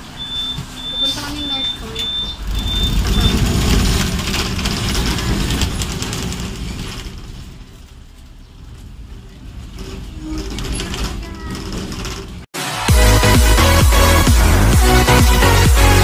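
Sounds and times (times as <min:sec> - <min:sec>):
tram rumbling and rattling: 0:00.0 - 0:12.6.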